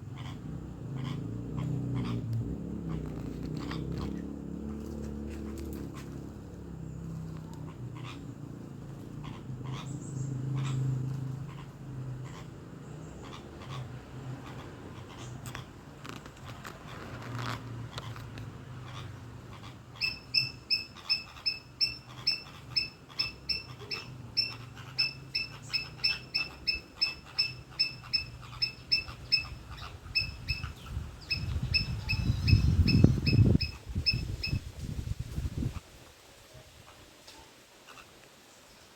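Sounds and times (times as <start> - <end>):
bird chirping: 18.9 - 34.6.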